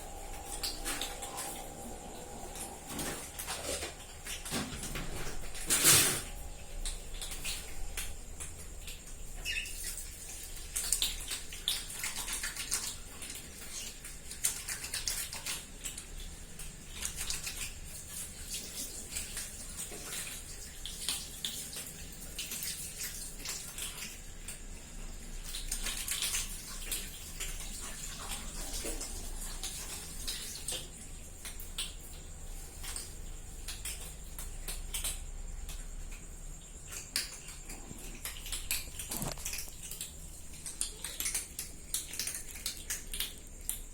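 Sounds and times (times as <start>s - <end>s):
cat eating with wet clicks: 19.0s - 43.9s.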